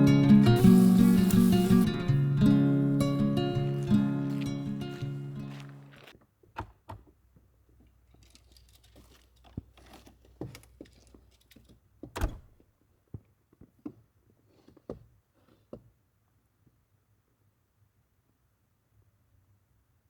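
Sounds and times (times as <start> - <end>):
acoustic guitar music: 0.0 - 6.1.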